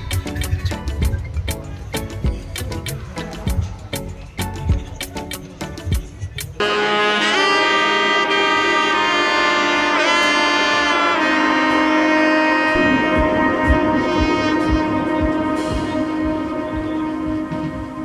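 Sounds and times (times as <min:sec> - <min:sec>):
regular music beat: 0:00.0 - 0:06.8, 0:12.7 - 0:18.0
music with brass-like tones: 0:00.0 - 0:18.0
pitch swoops: 0:12.7 - 0:18.0.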